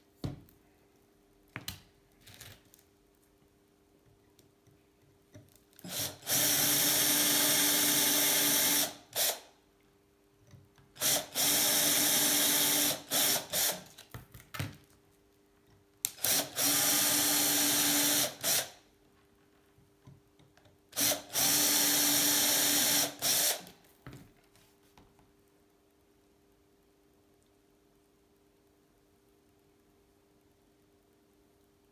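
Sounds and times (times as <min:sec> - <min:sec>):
power drill running: 0:05.8 - 0:09.5, 0:11.0 - 0:13.8, 0:16.2 - 0:18.8, 0:21.0 - 0:23.7
drill trigger blips: 0:21.0 - 0:23.7.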